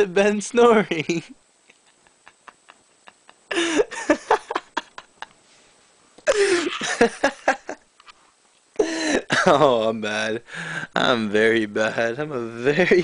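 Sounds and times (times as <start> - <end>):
man laughing: 0.8 - 5.3, 6.2 - 7.8, 8.8 - 9.8.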